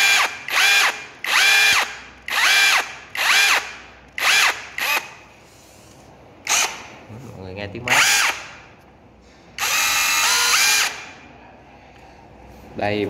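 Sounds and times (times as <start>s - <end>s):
cordless drill whining: 0.0s - 5.1s, 9.6s - 11.1s.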